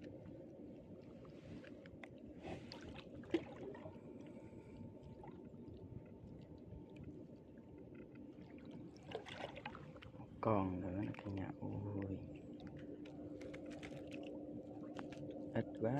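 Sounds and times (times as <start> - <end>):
fishing net splashing in water: 2.7 - 3.9, 9.0 - 10.0.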